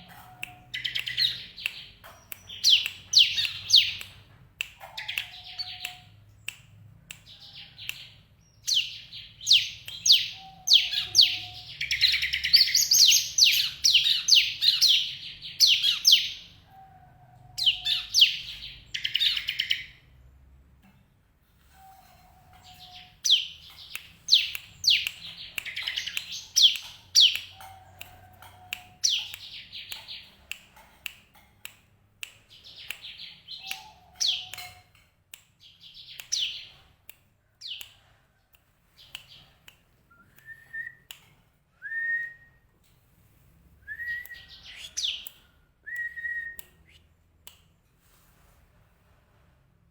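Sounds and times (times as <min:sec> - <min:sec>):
bird high chirps: 0:00.0 - 0:04.1, 0:04.8 - 0:06.3, 0:07.3 - 0:16.9, 0:17.6 - 0:20.0, 0:21.7 - 0:30.3, 0:32.5 - 0:34.8, 0:43.9 - 0:45.3.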